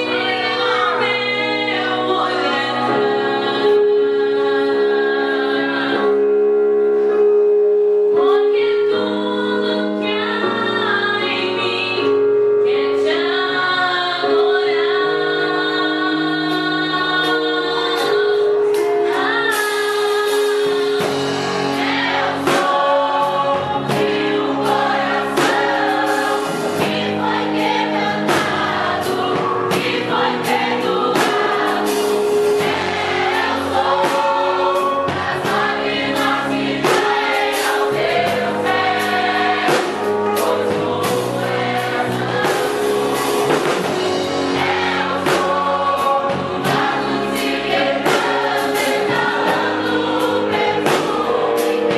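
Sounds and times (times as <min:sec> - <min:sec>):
gospel choir singing: 0:00.0 - 0:07.3, 0:08.2 - 0:51.9
held instrumental chords: 0:00.0 - 0:51.9
percussive beat: 0:23.9 - 0:51.9.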